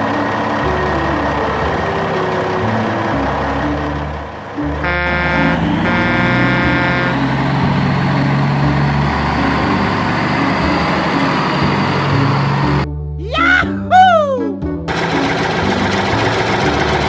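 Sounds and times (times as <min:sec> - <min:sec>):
truck engine running: 0:00.0 - 0:13.0, 0:14.6 - 0:17.0
truck horn blasts: 0:01.1 - 0:12.6.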